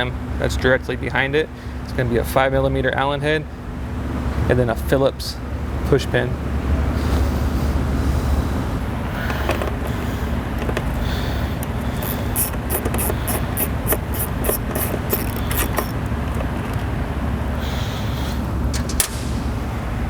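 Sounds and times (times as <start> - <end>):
steady low hum: 0.0 - 20.0
hand tools rubbing and scraping: 9.0 - 17.0.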